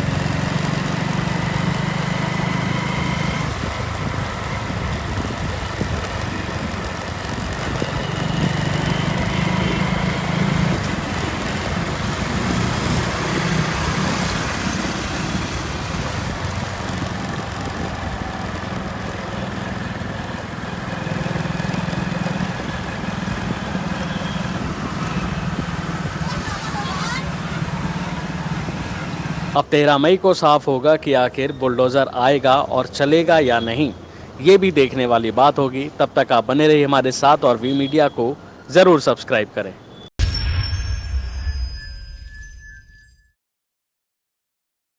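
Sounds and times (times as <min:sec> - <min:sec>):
vehicle engines passing: 0:00.0 - 0:29.7
road noise: 0:00.0 - 0:40.1.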